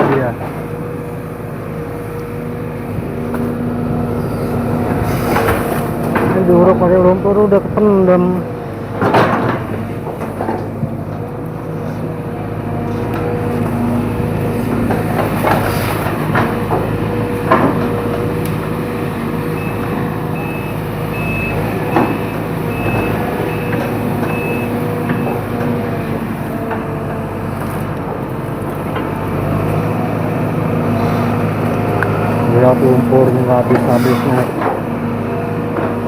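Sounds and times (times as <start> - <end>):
excavator diesel engine running: 0.0 - 36.0
sharp knocks and cracks: 4.9 - 6.5, 8.9 - 11.3, 14.6 - 18.8
travel alarm beeping: 19.5 - 25.5.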